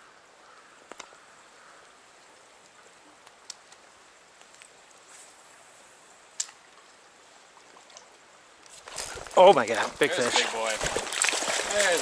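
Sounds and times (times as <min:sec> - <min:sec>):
stream flowing: 0:00.0 - 0:12.0.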